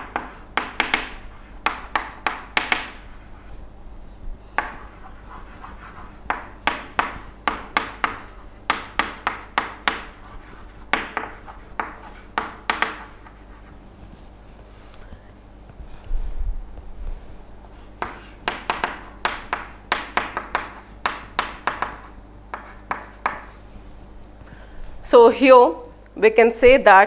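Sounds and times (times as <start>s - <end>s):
faint electrical hum: 0.0s - 27.0s
pen scratching while handwriting: 4.6s - 13.8s, 17.8s - 19.8s.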